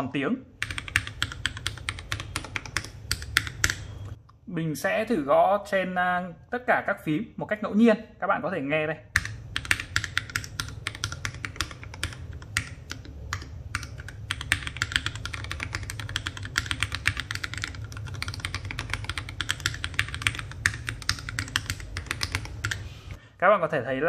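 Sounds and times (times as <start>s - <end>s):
mechanical keyboard typing: 0.6s - 4.0s, 9.1s - 22.8s.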